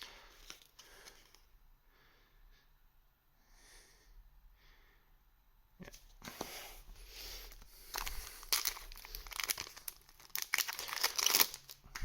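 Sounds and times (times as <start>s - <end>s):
foil wrapper tearing and crinkling: 7.9s - 12.0s.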